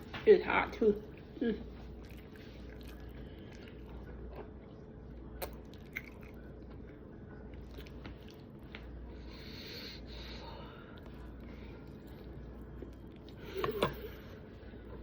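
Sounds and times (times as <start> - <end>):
steady low hum: 0.0 - 15.0
person chewing food: 1.2 - 15.0.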